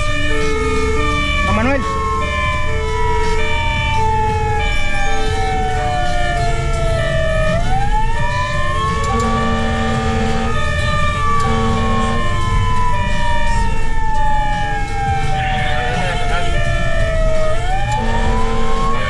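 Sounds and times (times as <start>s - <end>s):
fire truck wail siren: 0.0s - 19.0s
pulsing siren tone: 0.0s - 19.0s
truck engine rumble: 0.0s - 19.0s
low horn blasts: 9.0s - 13.1s, 17.8s - 19.0s.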